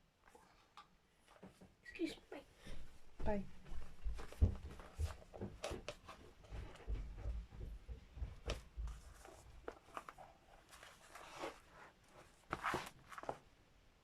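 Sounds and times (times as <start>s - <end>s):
paper and thread rustling: 8.4s - 13.5s.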